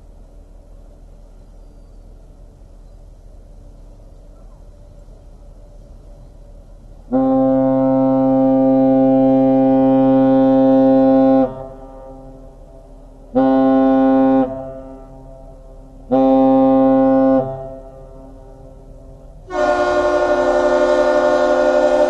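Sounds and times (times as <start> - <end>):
ship air horn blasts: 7.0 - 22.0.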